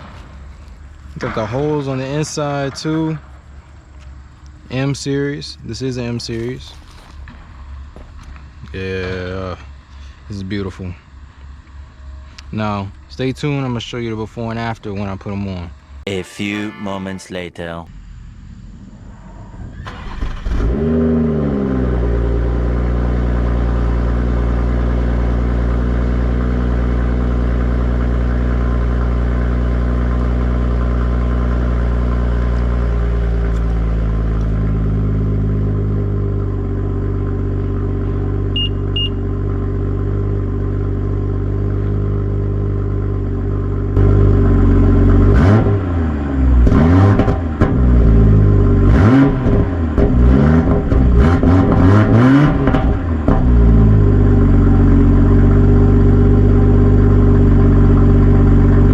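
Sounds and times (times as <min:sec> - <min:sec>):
car engine starting and idling: 0:00.0 - 0:16.7, 0:17.4 - 0:58.9
car engine revving: 0:19.9 - 0:58.9.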